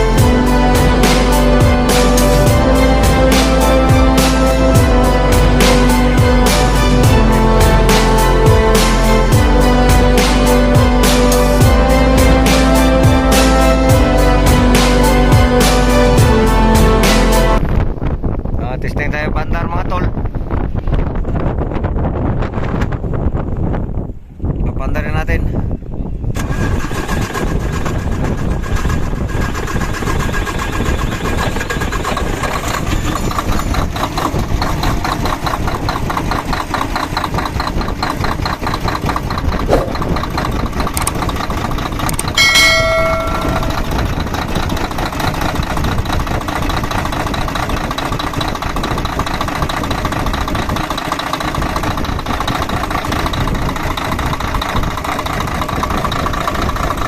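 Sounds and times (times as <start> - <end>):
diesel truck engine idling: 26.9 - 57.0.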